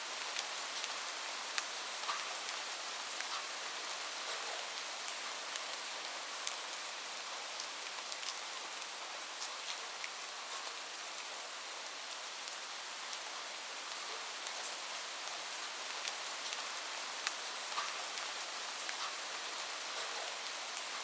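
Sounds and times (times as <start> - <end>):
rain falling on a roof: 0.0 - 21.0.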